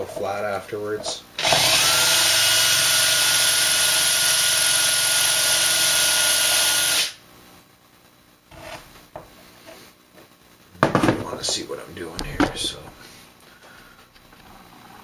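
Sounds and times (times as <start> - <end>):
power drill whining: 1.4 - 7.2.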